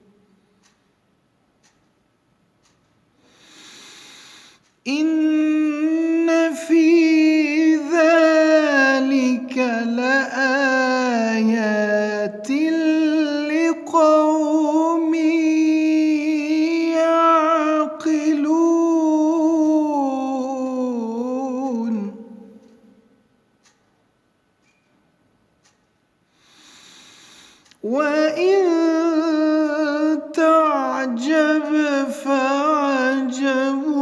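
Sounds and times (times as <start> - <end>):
man chanting melodically: 3.6 - 23.0, 26.8 - 34.0.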